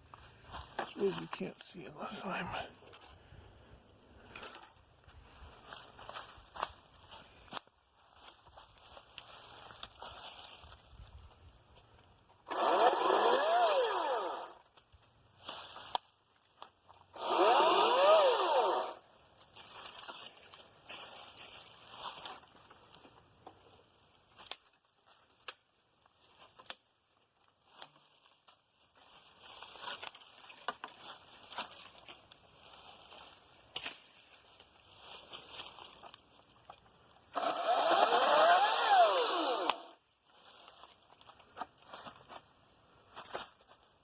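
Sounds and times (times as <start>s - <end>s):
brush and branches rustling: 0.0s - 12.7s, 13.8s - 44.0s
battery chainsaw motor whine: 12.5s - 14.6s, 17.2s - 19.0s, 37.3s - 40.0s.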